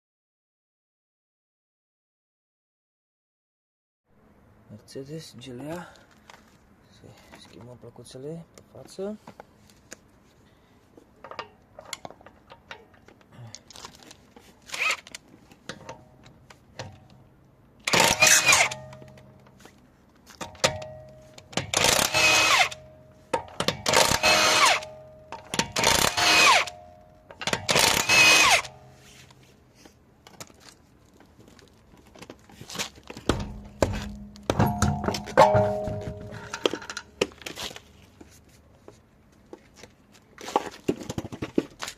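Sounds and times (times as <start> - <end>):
impact wrench bursts: 17.8 - 19.0, 21.6 - 26.8, 27.4 - 28.9
clicks and knocks: 33.1 - 37.6.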